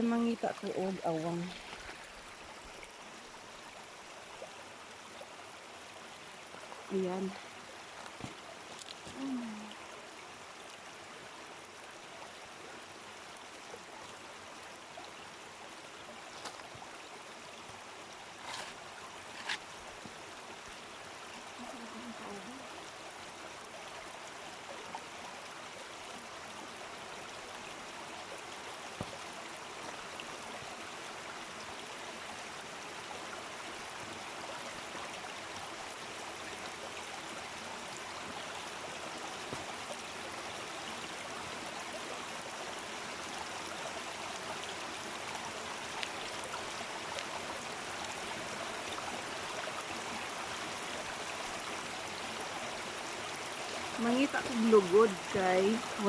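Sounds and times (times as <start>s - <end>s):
water rushing: 0.0s - 56.0s.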